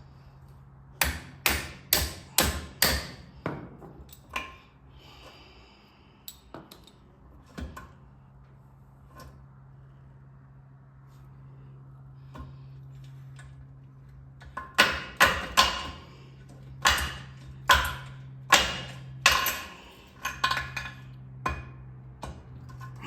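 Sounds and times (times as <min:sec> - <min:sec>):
hammer striking metal: 0:01.0 - 0:03.2, 0:16.8 - 0:19.7.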